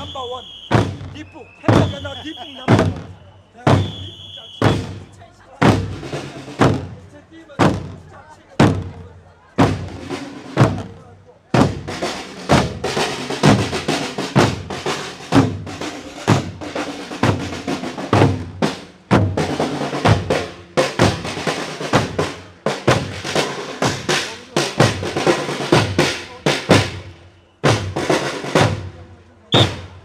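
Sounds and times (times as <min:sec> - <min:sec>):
snare drum rolls: 0:00.0 - 0:07.0, 0:09.6 - 0:11.0, 0:11.6 - 0:30.0
bass drum strokes: 0:09.6 - 0:29.0.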